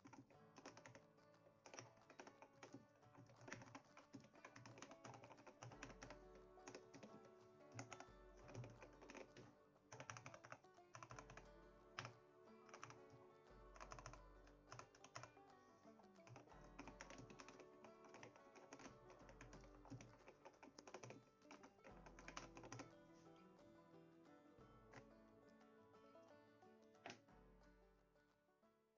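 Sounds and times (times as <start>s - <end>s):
typing on a mechanical keyboard: 0.0s - 1.0s, 1.6s - 11.2s, 12.7s - 13.0s, 13.8s - 15.3s, 16.2s - 22.9s
background music: 0.0s - 28.9s.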